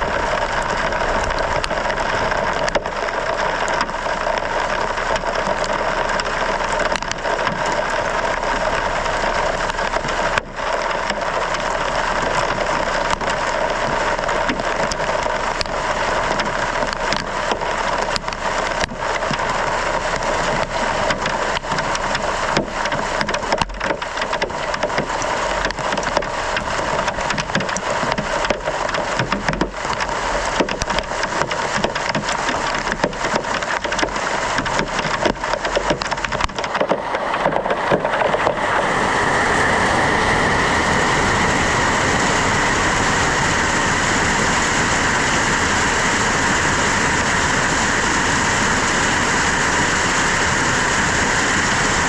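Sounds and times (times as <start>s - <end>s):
hailstones clattering: 0.0s - 38.6s.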